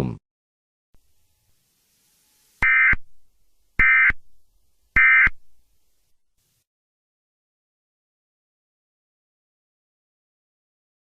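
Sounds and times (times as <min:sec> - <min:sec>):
two-tone digital chirps: 0:02.6 - 0:03.0, 0:03.8 - 0:04.2, 0:05.0 - 0:05.4.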